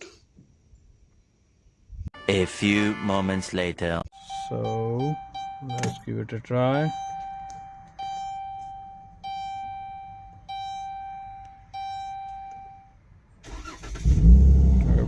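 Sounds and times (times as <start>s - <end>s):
dashboard warning chime: 4.2s - 13.0s
engine cranking and running: 13.4s - 15.0s.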